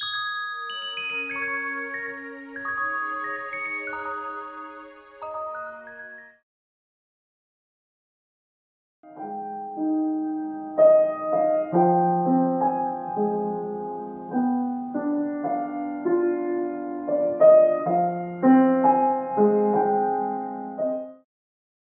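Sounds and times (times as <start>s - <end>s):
solo piano music: 9.1s - 21.3s.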